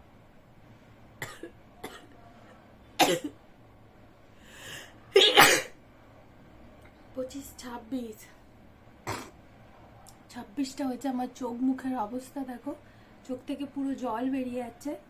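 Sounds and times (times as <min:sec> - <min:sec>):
sharp intake of breath: 0:04.3 - 0:05.0.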